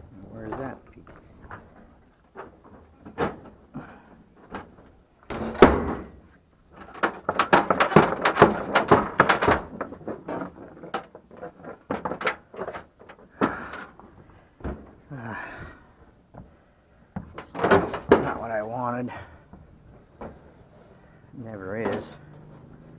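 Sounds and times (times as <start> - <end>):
scrap pieces knocking and clattering: 6.8 - 13.9.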